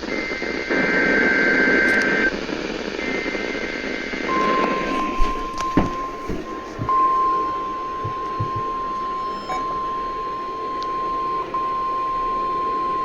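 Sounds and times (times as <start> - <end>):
radio static: 0.0 - 12.1
steady warning alarm tone: 4.3 - 13.0
screeching two-tone data burst: 8.4 - 11.9.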